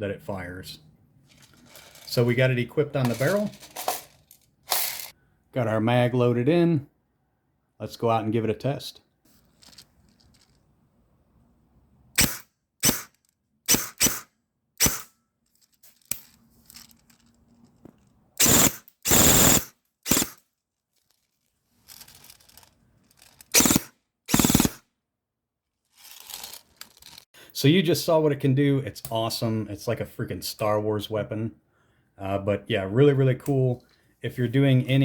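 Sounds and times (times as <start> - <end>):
airsoft rifle firing: 23.6 - 24.8.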